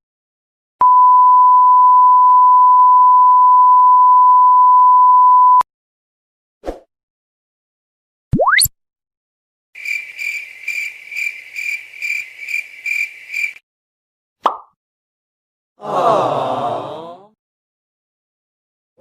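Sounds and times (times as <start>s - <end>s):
censor bleep tone: 0.8s - 5.6s.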